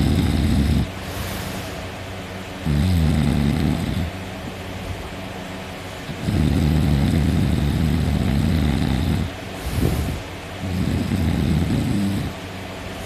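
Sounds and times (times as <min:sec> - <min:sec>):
deep loud snoring: 0:00.0 - 0:01.3, 0:02.6 - 0:04.2, 0:06.1 - 0:12.4
quiet breathing: 0:00.0 - 0:01.9, 0:07.3 - 0:12.4.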